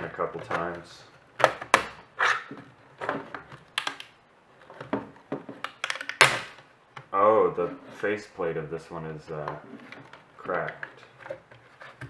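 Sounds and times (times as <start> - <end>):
loud plastic crack: 0.0 - 4.2, 5.2 - 7.0
plastic clicks and scrapes: 0.0 - 8.2, 9.2 - 12.0.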